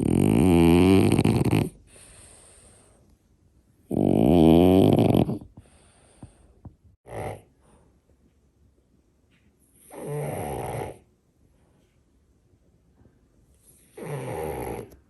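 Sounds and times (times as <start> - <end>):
dog snort: 0.0 - 2.5, 3.9 - 5.6, 7.0 - 7.5, 9.8 - 11.0, 13.7 - 15.0
dog snoring: 0.0 - 2.7, 3.8 - 5.8, 7.0 - 7.5, 9.8 - 11.1, 13.7 - 15.0.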